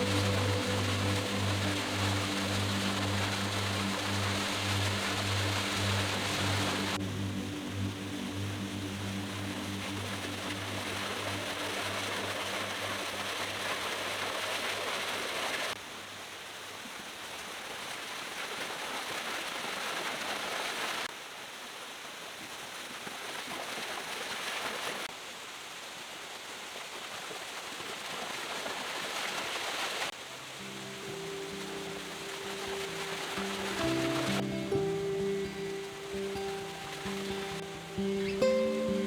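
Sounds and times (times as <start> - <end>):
waterfall rushing: 0.0 - 15.8, 29.2 - 39.0.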